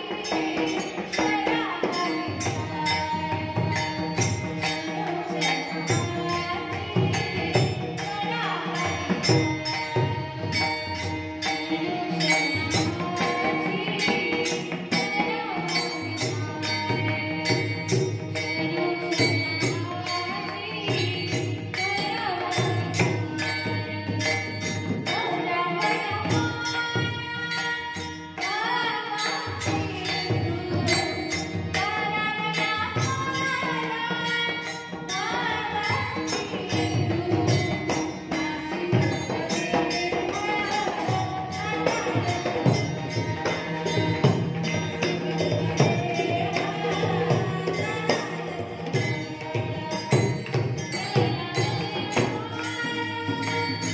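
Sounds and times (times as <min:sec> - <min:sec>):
hand cymbals striking a beat: 0:00.0 - 0:53.9
person singing devotional song: 0:00.0 - 0:53.9.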